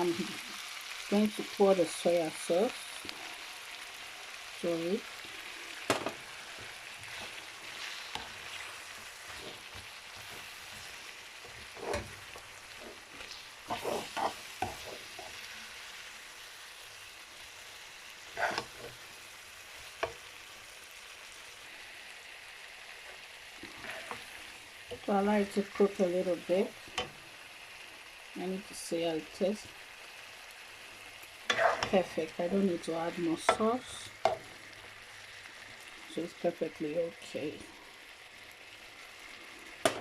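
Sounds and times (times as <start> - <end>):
food sizzling in a wok: 0.0 - 40.0
utensil scraping a pan: 6.4 - 15.5, 18.3 - 19.0, 23.6 - 25.1, 31.5 - 32.1.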